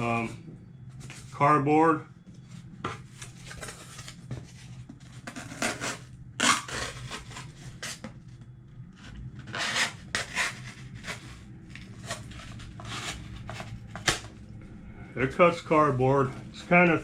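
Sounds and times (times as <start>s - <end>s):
knife cutting cardboard: 3.1s - 8.1s, 9.5s - 11.4s, 12.0s - 14.3s.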